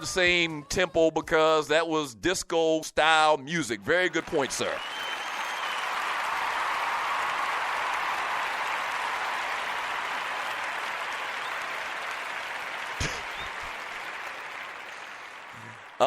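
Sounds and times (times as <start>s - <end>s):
crowd applause: 3.9s - 16.0s.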